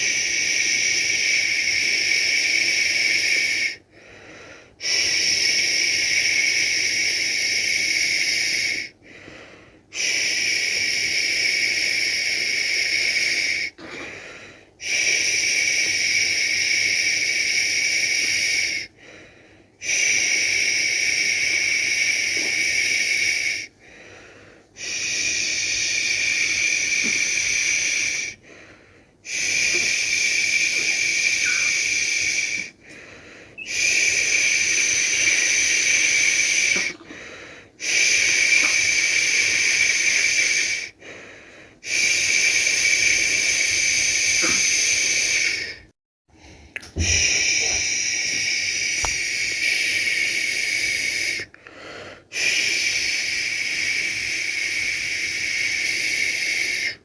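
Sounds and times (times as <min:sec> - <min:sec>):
person shushing: 0:29.3 - 0:32.7, 0:33.6 - 0:37.1, 0:46.8 - 0:51.5.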